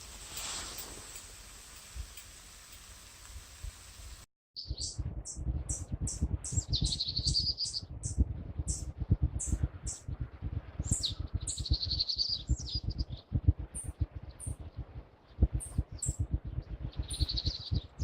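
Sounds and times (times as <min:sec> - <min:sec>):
low rumble: 0:04.6 - 0:18.0
songbird singing: 0:04.6 - 0:18.0.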